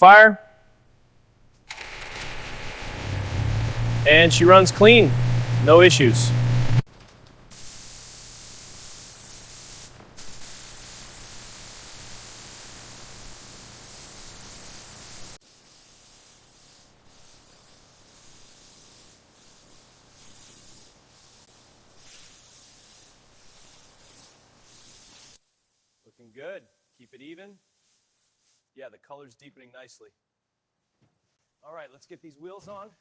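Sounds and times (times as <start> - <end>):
paint spray gun hissing: 1.7 - 6.8, 7.5 - 25.4.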